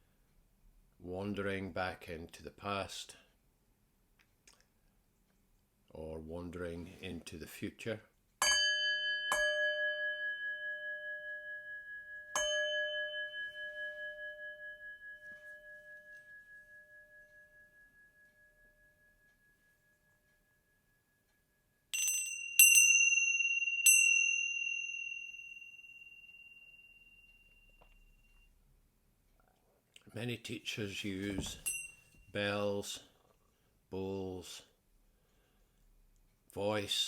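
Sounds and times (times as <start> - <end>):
small bell ringing: 8.4 - 21.2, 21.9 - 28.5, 31.4 - 32.3
singing bowl ringing: 8.4 - 28.5, 31.4 - 32.3.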